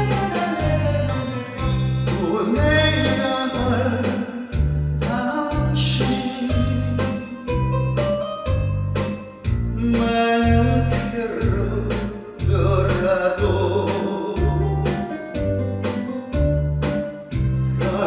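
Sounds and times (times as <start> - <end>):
group of people singing: 0.0 - 1.4
instrumental accompaniment: 0.0 - 18.0.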